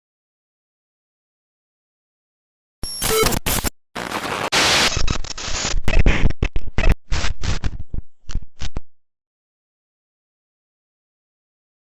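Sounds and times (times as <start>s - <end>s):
harsh glitching static: 2.8s - 7.6s.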